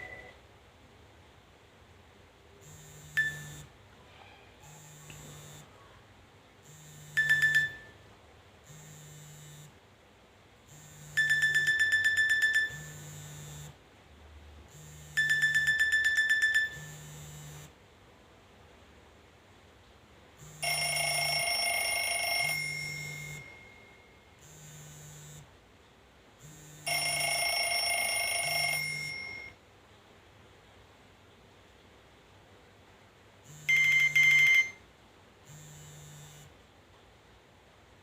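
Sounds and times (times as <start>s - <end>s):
ringtone high beeps: 0.0s - 0.4s, 3.2s - 3.6s, 7.2s - 8.0s, 11.2s - 13.0s, 15.2s - 17.2s, 20.6s - 24.2s, 26.9s - 29.6s, 33.6s - 34.8s
low electronic buzz: 2.6s - 3.7s, 8.7s - 9.7s, 12.8s - 13.8s, 16.8s - 17.7s, 24.4s - 25.5s, 26.4s - 26.9s, 35.5s - 36.5s.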